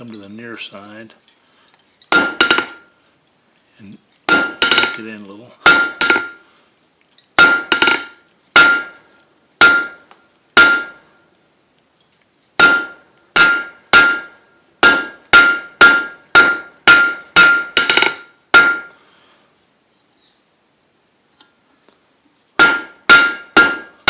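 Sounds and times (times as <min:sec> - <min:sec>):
anvil ringing: 0:02.1 - 0:02.9, 0:04.3 - 0:06.4, 0:07.4 - 0:11.3, 0:12.6 - 0:19.1, 0:22.6 - 0:24.0
hammer striking steel on anvil: 0:02.1 - 0:02.9, 0:04.3 - 0:06.4, 0:07.4 - 0:11.3, 0:12.6 - 0:19.1, 0:22.6 - 0:24.0.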